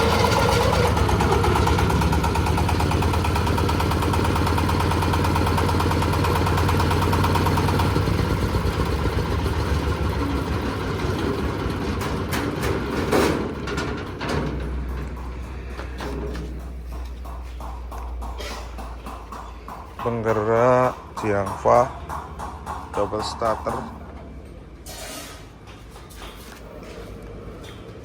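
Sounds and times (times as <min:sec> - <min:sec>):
engine-driven corn sheller running: 0:00.0 - 0:19.2
clattering: 0:10.4 - 0:23.9.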